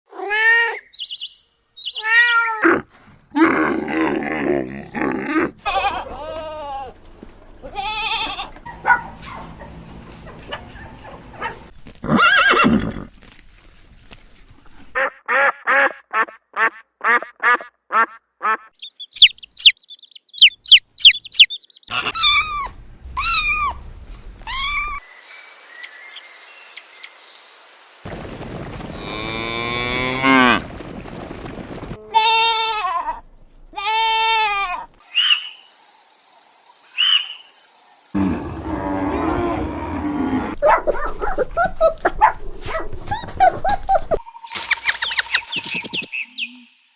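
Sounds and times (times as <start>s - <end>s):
farm animal calls: 5.6s - 13.0s, 15.0s - 23.8s
high-pitched chirps: 18.8s - 21.9s, 25.7s - 27.1s, 44.2s - 46.9s.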